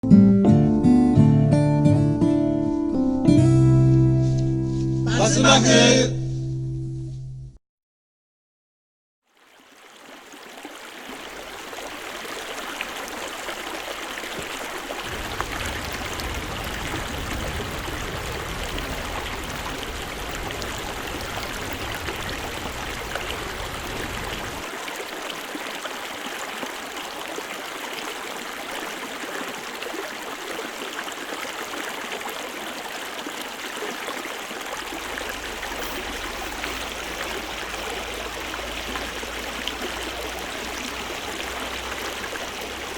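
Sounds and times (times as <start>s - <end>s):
stream water rushing: 9.3s - 42.9s.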